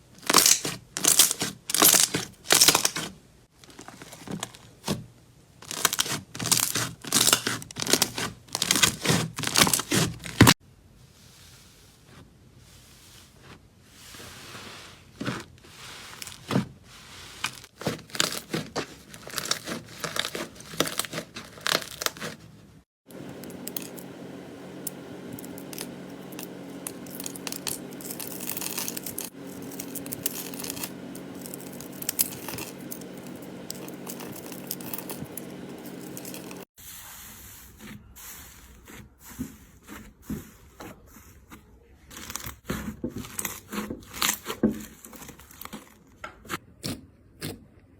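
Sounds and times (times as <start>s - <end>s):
low hum: 23.1s - 36.7s
slime crackling and popping: 26.8s - 32.8s.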